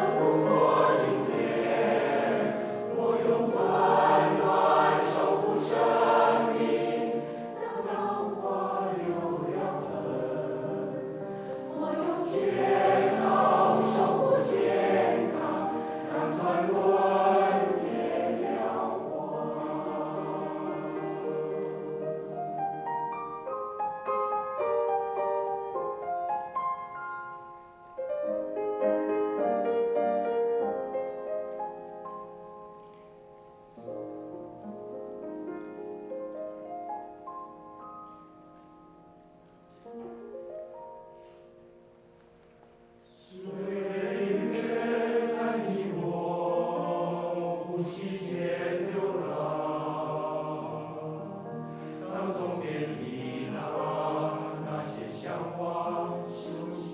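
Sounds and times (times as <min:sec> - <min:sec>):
choir singing: 0:00.0 - 0:23.9, 0:43.0 - 0:56.9
slow piano melody: 0:00.0 - 0:56.9.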